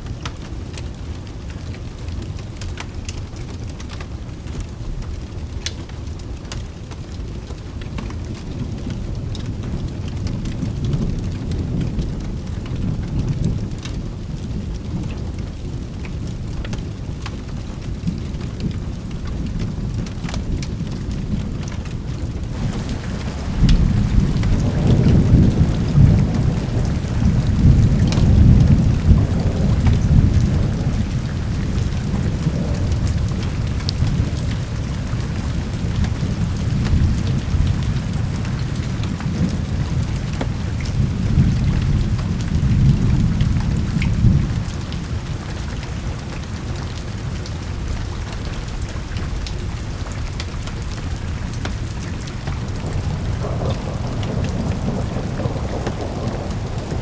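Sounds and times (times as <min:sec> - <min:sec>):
steady rain: 0:00.0 - 0:57.0
rolling thunder: 0:22.5 - 0:45.5, 0:50.9 - 0:57.0.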